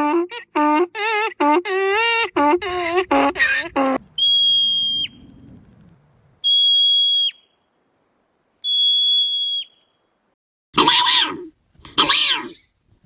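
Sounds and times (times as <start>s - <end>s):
high-pitched whistled animal calls: 4.2s - 5.2s, 6.4s - 7.6s, 8.6s - 10.0s, 12.0s - 12.8s
harsh raspy animal call: 10.8s - 12.7s.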